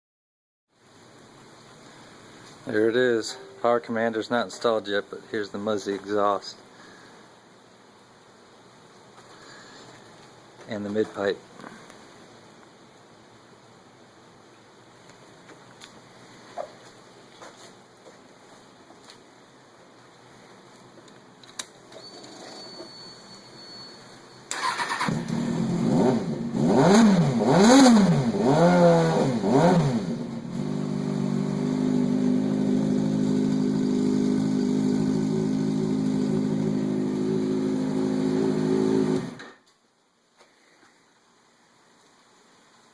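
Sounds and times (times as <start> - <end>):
motorcycle engine revving and idling: 25.0 - 39.4.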